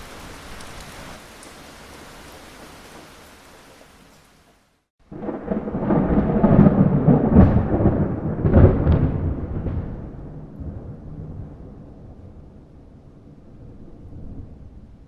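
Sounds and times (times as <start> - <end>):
rain hiss: 0.0 - 4.9
thunder rumbling: 5.1 - 15.0.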